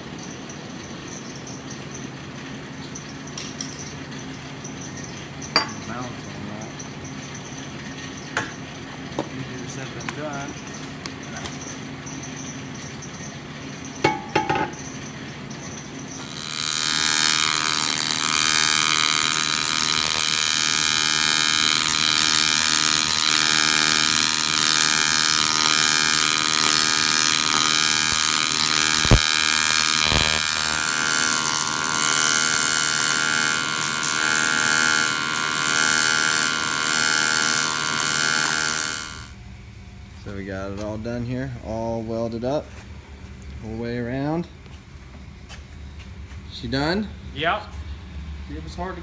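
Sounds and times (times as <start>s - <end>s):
sharp clicks: 16.2s - 35.5s
welding arc buzzing: 16.2s - 39.4s.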